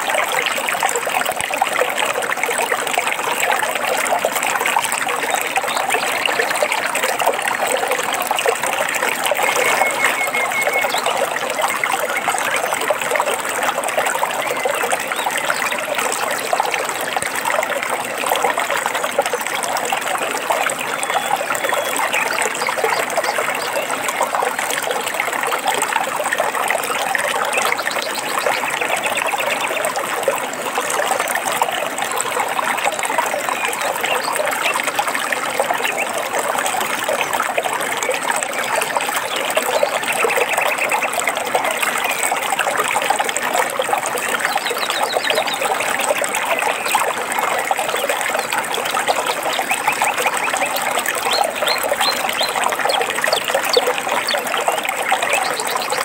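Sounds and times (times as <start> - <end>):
stream water trickling: 0.0 - 56.0
faint bird chirps: 9.3 - 11.3.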